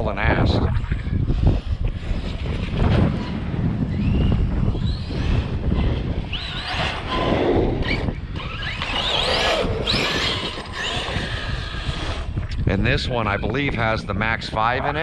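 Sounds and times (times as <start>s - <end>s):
wind noise on microphone: 0.0s - 15.0s
electric motor whining: 1.2s - 12.7s.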